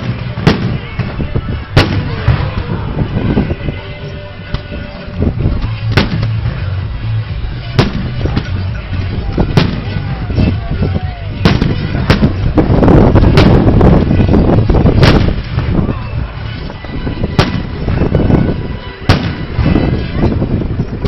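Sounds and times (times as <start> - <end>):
fireworks loud bangs: 0.0 - 2.8, 5.9 - 6.4, 7.7 - 8.6, 9.5 - 10.1, 11.4 - 15.8, 17.3 - 18.0, 19.0 - 20.2
low rumble of fireworks bursts: 0.0 - 21.0.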